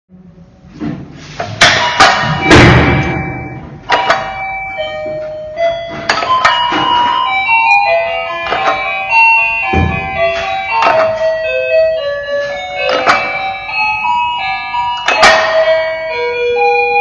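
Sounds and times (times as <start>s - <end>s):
noisy crash-like hits: 1.6s - 4.2s
synthetic beeping chime tune: 1.8s - 17.0s.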